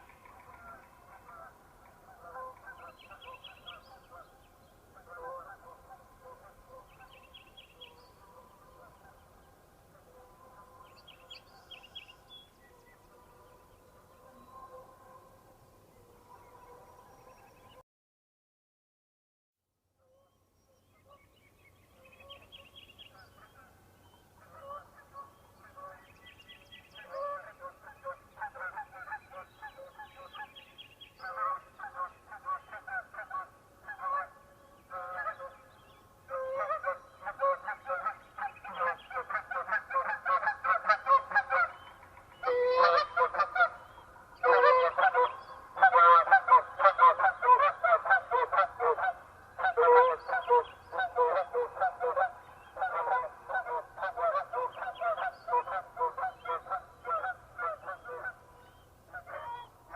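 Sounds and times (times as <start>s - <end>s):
geese honking in flight: 5.0s - 6.9s, 42.4s - 43.8s, 44.4s - 58.4s.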